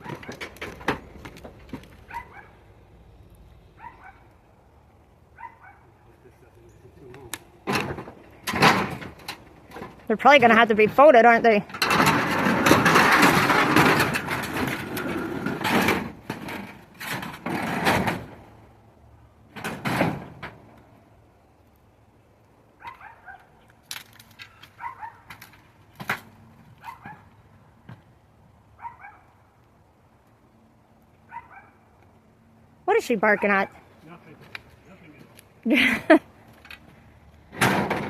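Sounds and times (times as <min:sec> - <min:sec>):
dog barking faintly: 0:05.4 - 0:06.2.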